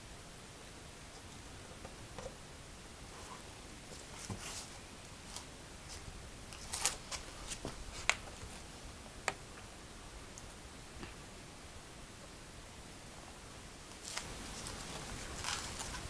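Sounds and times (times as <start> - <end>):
rustling of craft pieces: 3.1 - 8.7, 14.0 - 16.0.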